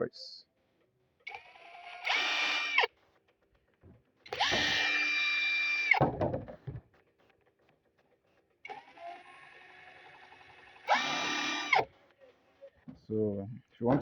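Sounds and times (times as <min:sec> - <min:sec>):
cordless driver motor whine: 0:01.3 - 0:02.9, 0:04.3 - 0:06.0, 0:08.7 - 0:11.9.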